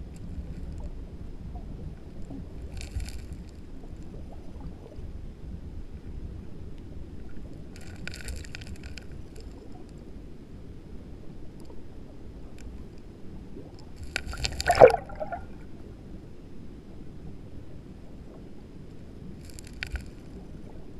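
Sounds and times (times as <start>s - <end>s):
crackling hiss: 0.0s - 5.0s, 5.6s - 10.6s, 12.4s - 16.0s, 18.0s - 20.9s
water splash: 14.1s - 15.7s.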